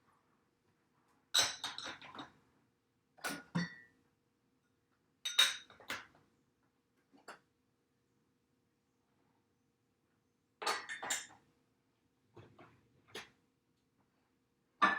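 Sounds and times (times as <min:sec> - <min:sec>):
cups clinking in a dishwasher rack: 0:01.4 - 0:02.2, 0:03.3 - 0:03.9, 0:05.3 - 0:06.1, 0:10.6 - 0:11.4.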